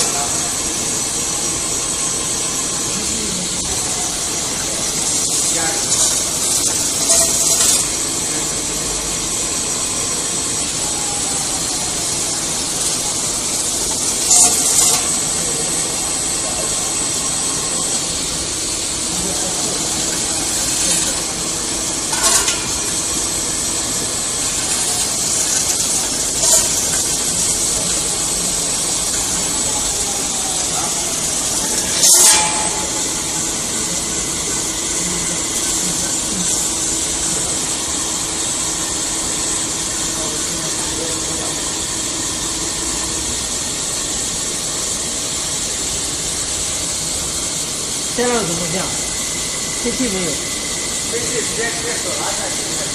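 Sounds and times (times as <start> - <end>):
metal spinning machine running: 0.0 - 52.9.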